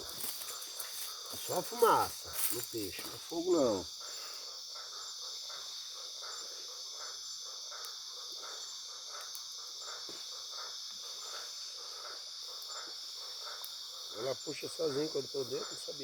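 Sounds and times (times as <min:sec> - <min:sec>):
cricket drone: 0:00.0 - 0:16.0
soft pulsing insect call: 0:00.0 - 0:16.0.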